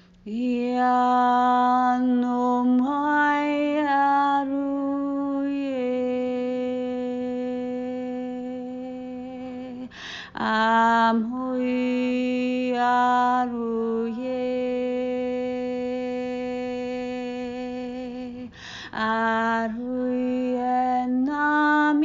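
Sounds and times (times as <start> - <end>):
woman breathing in: 9.9 - 10.4, 18.5 - 19.0.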